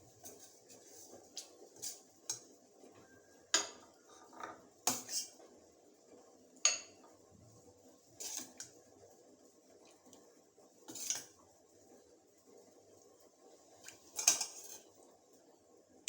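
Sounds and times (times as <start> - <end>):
metal utensils clinking on pots: 0.2 - 2.5, 3.5 - 5.4, 6.6 - 7.1, 10.9 - 11.3, 14.1 - 14.9.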